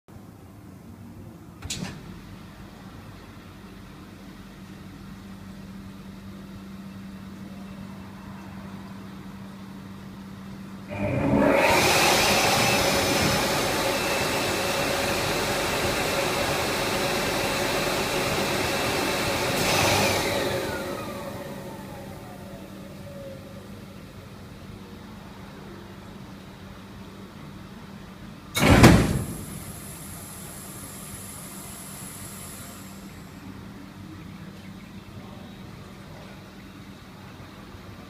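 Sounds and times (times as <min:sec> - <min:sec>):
electric blower whining: 0:10.9 - 0:22.8.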